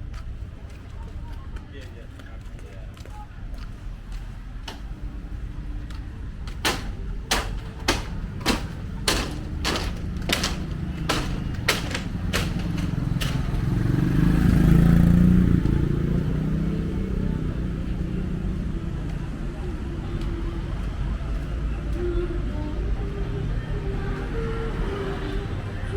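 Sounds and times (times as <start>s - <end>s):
sharp knocks: 6.5s - 13.9s
motorcycle passing: 12.1s - 18.4s.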